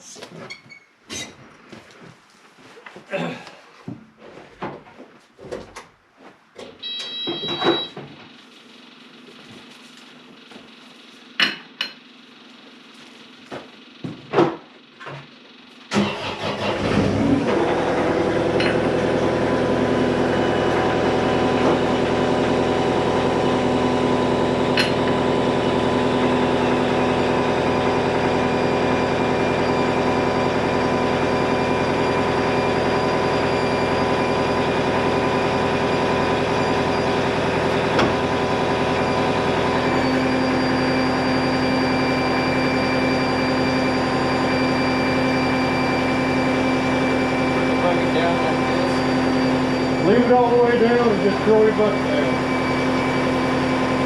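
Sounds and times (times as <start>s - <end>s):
engine cranking and idling: 15.9s - 23.4s, 34.7s - 39.9s.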